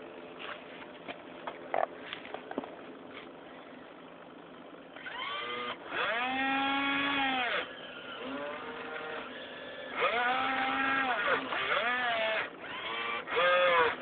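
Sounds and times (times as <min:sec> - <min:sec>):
electric motors whining: 0:04.4 - 0:14.0.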